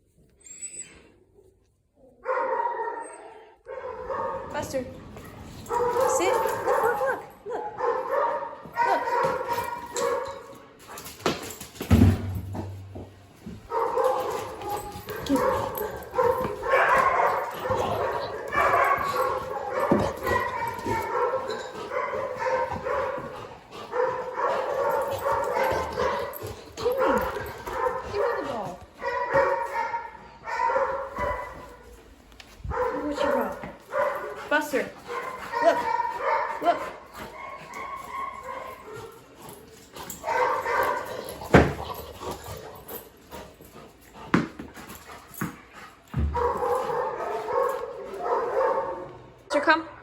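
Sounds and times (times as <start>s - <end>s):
dog barking and whining: 2.0s - 4.8s, 5.6s - 10.6s, 13.7s - 32.0s, 35.1s - 42.6s.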